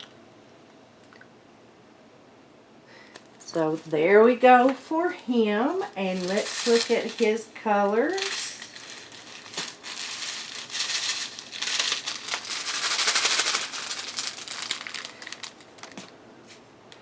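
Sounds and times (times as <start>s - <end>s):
plastic bags crinkling: 5.4s - 16.2s.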